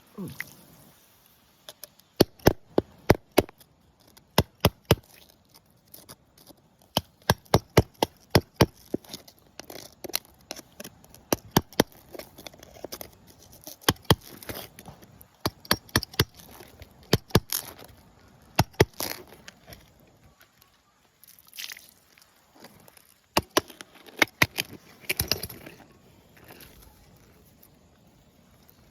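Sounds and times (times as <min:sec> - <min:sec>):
hard objects clicking and knocking: 0:01.7 - 0:19.9, 0:22.6 - 0:25.8.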